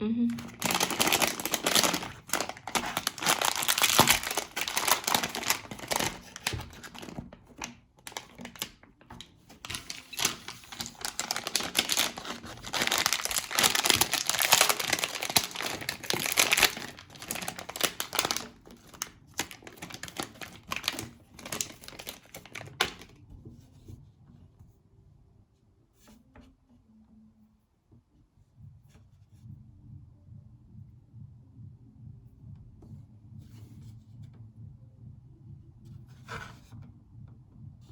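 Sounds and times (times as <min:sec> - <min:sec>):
plastic packaging crinkling and tearing: 0:00.3 - 0:23.2.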